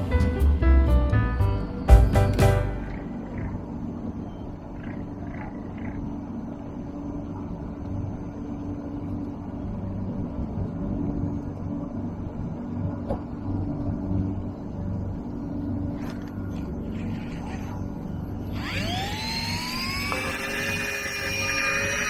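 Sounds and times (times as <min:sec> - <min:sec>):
music sting: 0:00.0 - 0:03.7
boat engine humming: 0:00.0 - 0:07.3.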